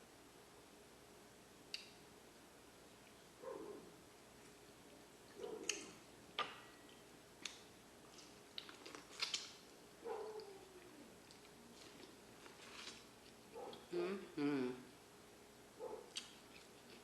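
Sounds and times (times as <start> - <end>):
lip smacks of chewing: 5.3 - 9.7, 16.1 - 17.0
person humming murmurs: 13.9 - 14.9.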